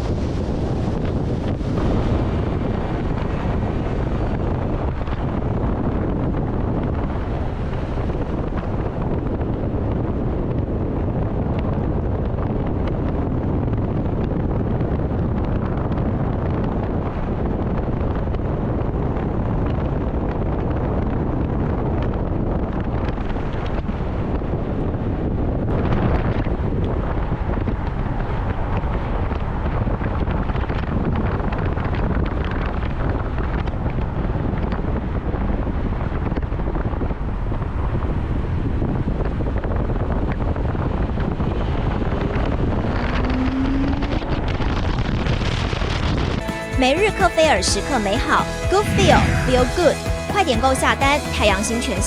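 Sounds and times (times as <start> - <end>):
wind and road noise: 0.0 - 52.0.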